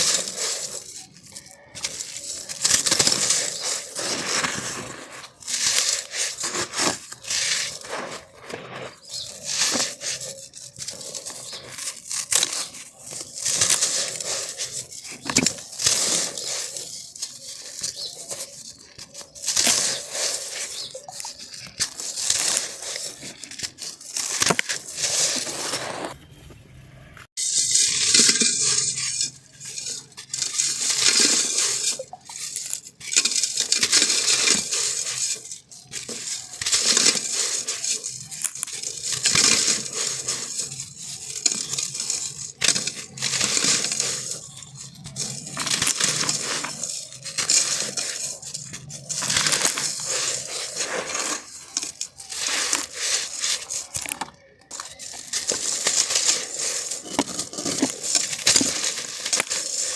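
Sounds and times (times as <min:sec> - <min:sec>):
sand crunching in hand: 0:00.0 - 0:26.1, 0:27.5 - 0:54.1, 0:54.7 - 0:59.9.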